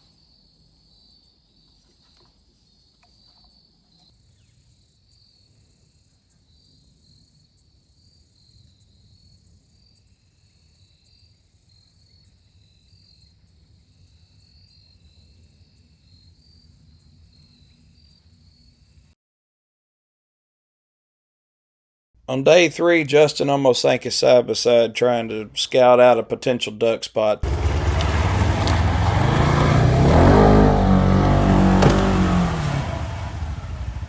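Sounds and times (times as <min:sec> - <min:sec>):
insects chirping: 0:00.1 - 0:19.1.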